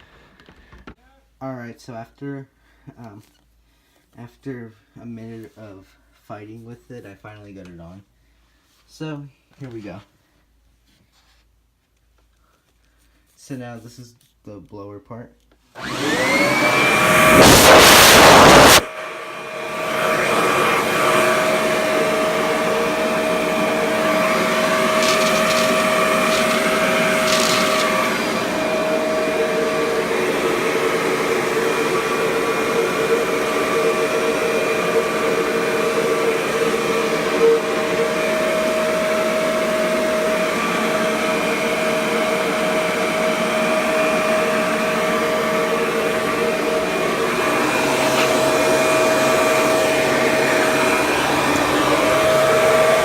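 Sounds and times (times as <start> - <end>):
vacuum motor whining: 15.8 - 53.0
air rushing through hose: 17.1 - 18.9, 24.0 - 28.7.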